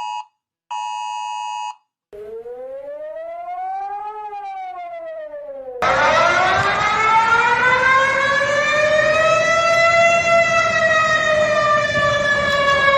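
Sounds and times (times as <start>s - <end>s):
faint gliding siren tone: 2.2s - 12.9s
warning siren winding up: 2.2s - 12.9s.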